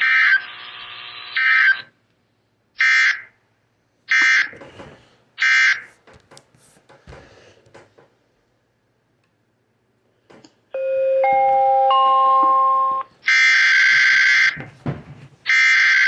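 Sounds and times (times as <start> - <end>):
harsh digital screeches: 0.0 - 1.9.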